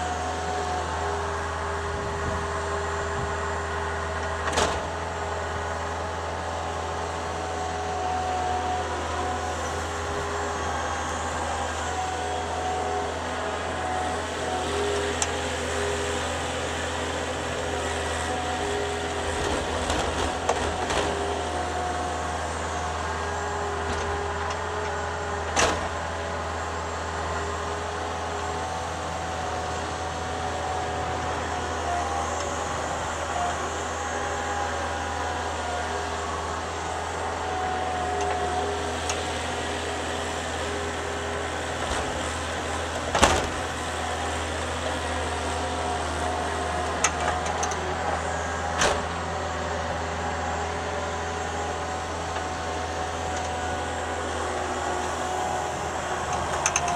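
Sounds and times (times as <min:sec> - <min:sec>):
skid steer engine running: 0:00.0 - 0:56.9.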